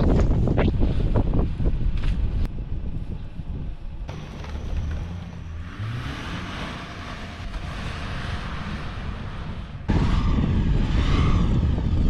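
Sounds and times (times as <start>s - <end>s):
vehicle engine revving: 4.1s - 12.0s.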